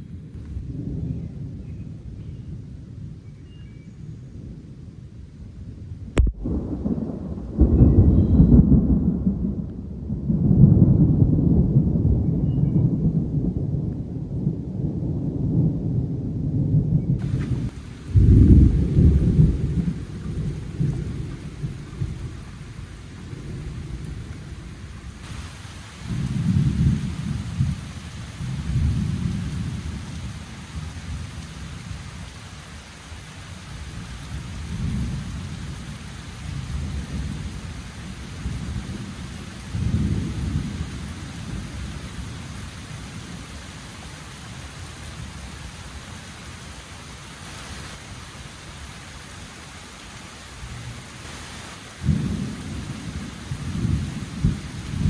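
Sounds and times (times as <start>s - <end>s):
thunder rumbling: 0.0s - 3.2s, 6.0s - 32.4s, 33.7s - 45.8s, 50.7s - 55.0s
rain hissing: 6.2s - 9.7s, 17.2s - 55.0s.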